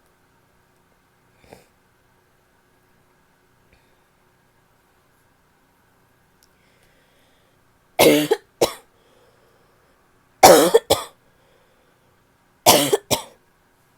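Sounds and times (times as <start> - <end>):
woman coughing: 8.0 - 8.8, 10.4 - 11.2, 12.7 - 13.4.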